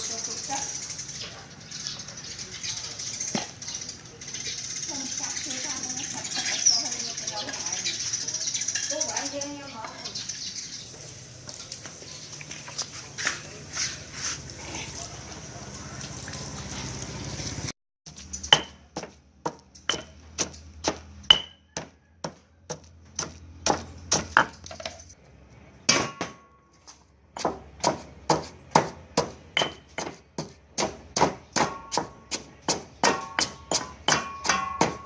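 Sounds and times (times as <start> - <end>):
hard chopping strikes: 27.4 - 35.0.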